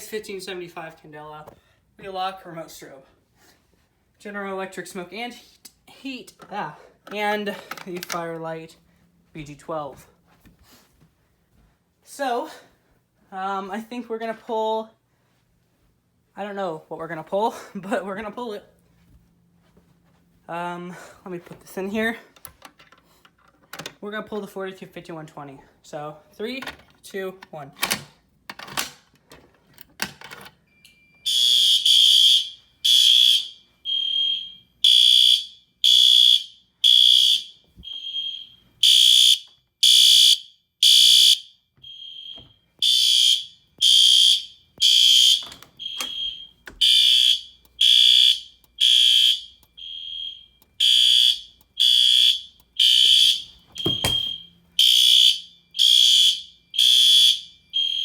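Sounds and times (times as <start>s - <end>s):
fire alarm horn blasts: 31.2s - 58.0s.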